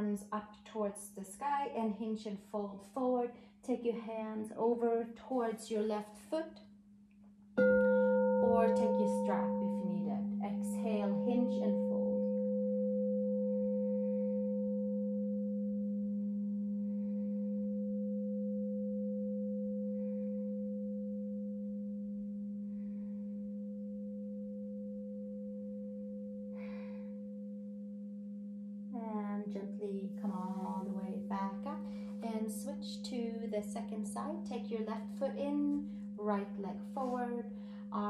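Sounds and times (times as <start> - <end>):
crystal singing bowl ringing: 7.6 - 38.0.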